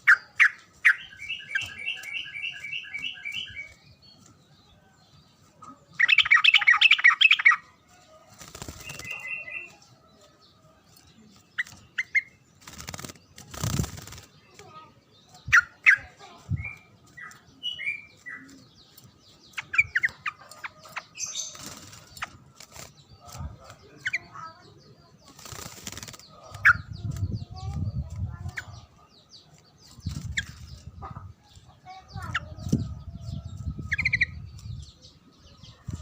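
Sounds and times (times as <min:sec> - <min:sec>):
bulbul chattering and chirping: 0:00.0 - 0:04.2, 0:05.6 - 0:07.8, 0:08.4 - 0:09.8, 0:10.9 - 0:36.0
rustling bursts: 0:12.5 - 0:14.8.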